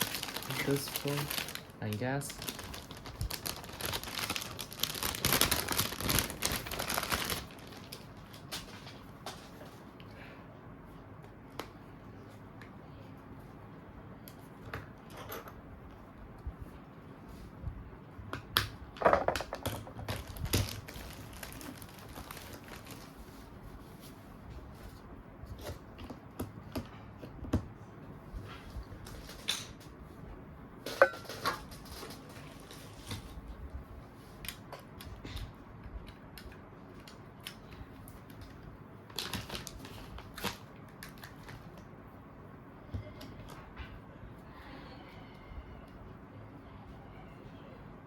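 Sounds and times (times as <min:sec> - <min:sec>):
plastic packaging crinkling: 0:00.0 - 0:09.0, 0:19.3 - 0:24.1, 0:37.0 - 0:41.8.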